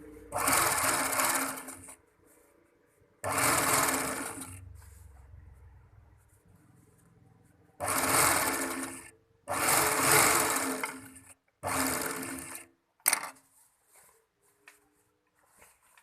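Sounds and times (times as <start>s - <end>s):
overlock sewing machine running: 0.3s - 1.9s, 3.2s - 4.7s, 7.8s - 12.7s.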